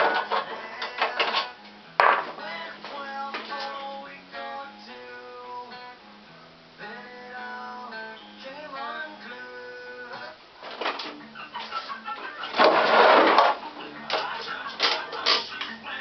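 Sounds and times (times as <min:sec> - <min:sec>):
acoustic guitar music: 0:00.0 - 0:16.0.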